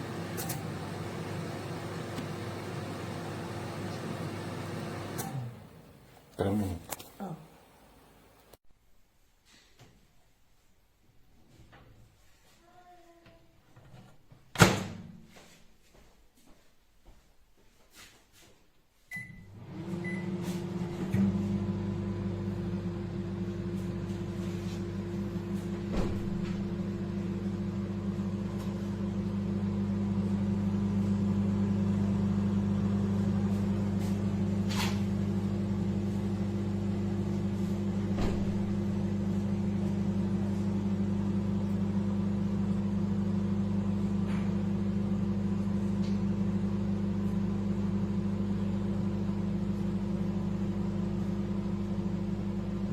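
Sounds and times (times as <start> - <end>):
microwave humming with fan: 0.0 - 8.5, 19.1 - 52.9
microwave beeps: 19.1 - 20.5.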